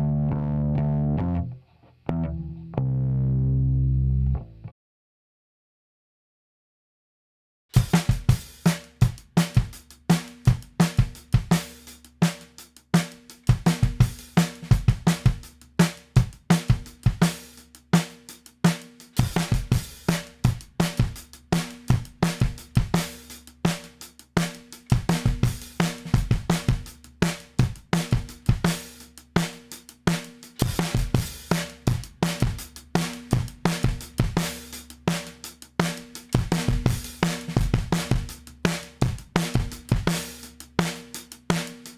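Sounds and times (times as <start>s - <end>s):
drum kit playing steady beat: 7.8s - 41.9s.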